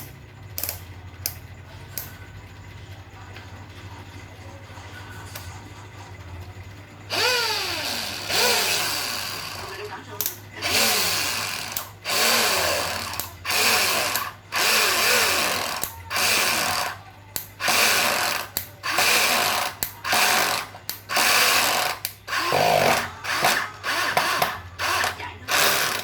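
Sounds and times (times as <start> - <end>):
electric drill spinning up: 7.1 - 9.8, 10.6 - 17.0, 17.6 - 26.0.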